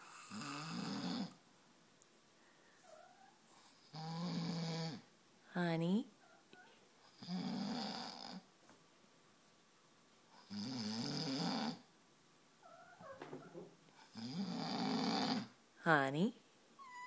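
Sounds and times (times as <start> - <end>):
man snoring loudly: 0.0 - 1.3, 10.5 - 11.8, 14.2 - 15.5.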